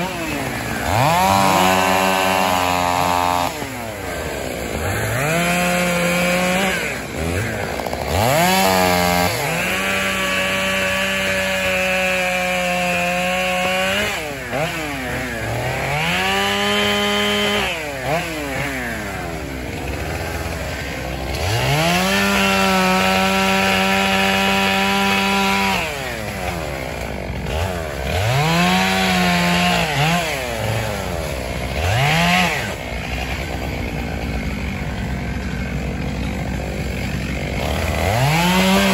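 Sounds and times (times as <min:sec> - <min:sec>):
chainsaw revving and idling: 0:00.0 - 0:38.9.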